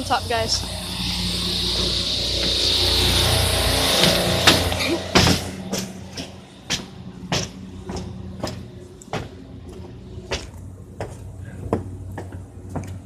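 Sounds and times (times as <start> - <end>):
steady low hum: 0.0 - 13.0
footsteps on a rooftop: 1.6 - 3.0, 3.9 - 13.0.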